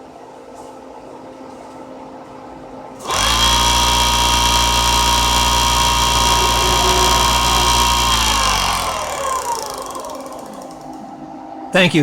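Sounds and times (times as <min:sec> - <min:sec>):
faint hum: 0:00.0 - 0:12.0
electric motor whine: 0:03.0 - 0:11.2.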